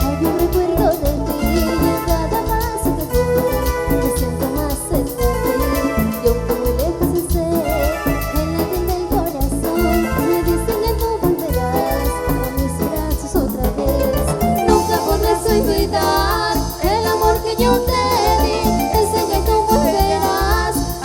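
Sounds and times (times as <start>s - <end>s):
fast even percussion: 0.0s - 21.0s
pounding bass line: 0.0s - 21.0s
gliding keyboard melody: 9.6s - 21.0s.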